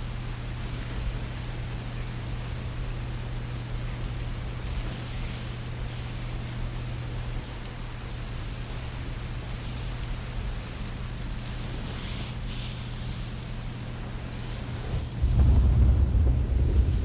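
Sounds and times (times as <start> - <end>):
deep rumble: 15.0 - 17.0
rain falling: 15.0 - 17.0.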